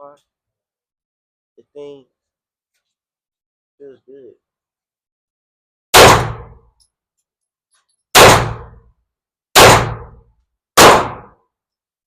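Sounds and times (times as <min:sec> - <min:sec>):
pistol shots: 0:05.9 - 0:06.6, 0:08.1 - 0:08.8, 0:09.6 - 0:10.2, 0:10.8 - 0:11.4.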